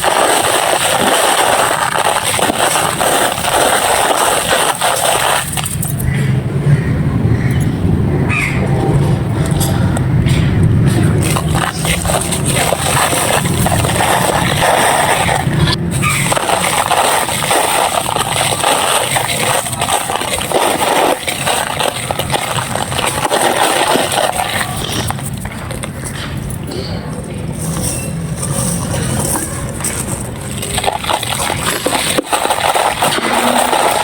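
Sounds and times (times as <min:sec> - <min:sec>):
dry clay crumbling: 0:10.2 - 0:26.5.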